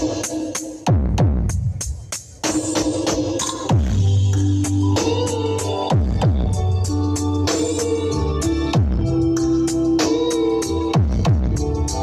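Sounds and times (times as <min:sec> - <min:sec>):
electronic dance music: 0:00.0 - 0:12.0
deep kick drums dropping in pitch: 0:00.9 - 0:01.8, 0:05.9 - 0:06.6, 0:11.0 - 0:11.7.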